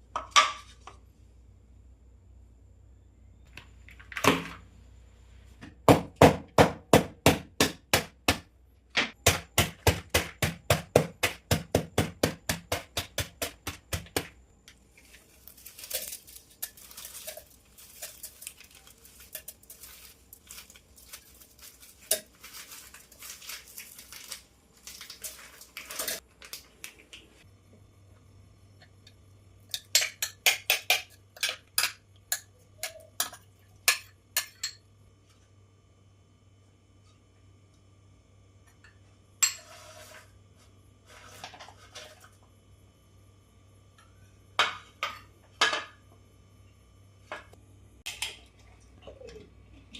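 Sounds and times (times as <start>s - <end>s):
knife chopping on cutting board: 9.2s - 14.3s
kitchen utensils clinking: 15.5s - 26.2s.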